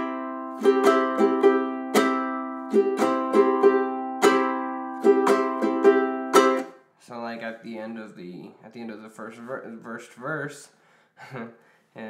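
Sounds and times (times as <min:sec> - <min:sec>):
ukulele strumming chords: 0:00.0 - 0:06.8.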